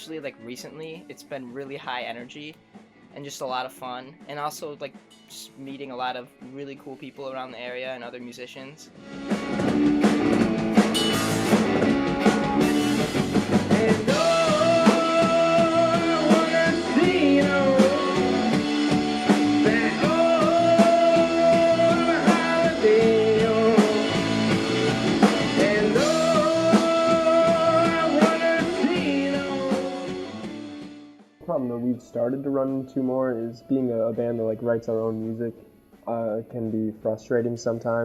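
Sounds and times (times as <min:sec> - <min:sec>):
rock band playing: 0:09.0 - 0:31.0
person singing long notes: 0:13.8 - 0:18.6, 0:19.6 - 0:24.2, 0:25.6 - 0:30.2.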